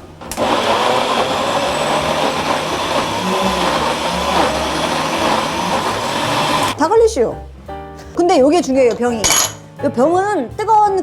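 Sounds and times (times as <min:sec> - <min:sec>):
electric blender grinding: 0:00.3 - 0:06.8.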